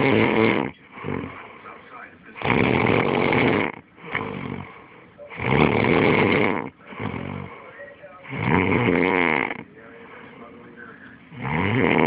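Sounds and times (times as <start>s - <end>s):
person snoring: 0.0s - 1.7s, 2.4s - 9.6s, 11.3s - 12.0s.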